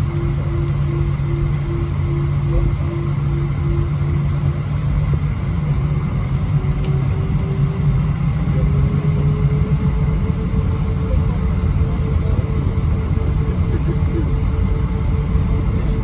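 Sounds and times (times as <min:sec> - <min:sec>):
aircraft cabin engine rumble: 0:00.0 - 0:16.0.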